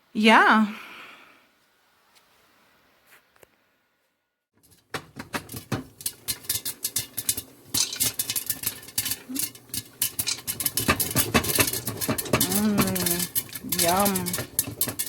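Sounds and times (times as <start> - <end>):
oil sizzling: 4.6 - 15.0
popcorn crackling in a pot: 4.6 - 15.0.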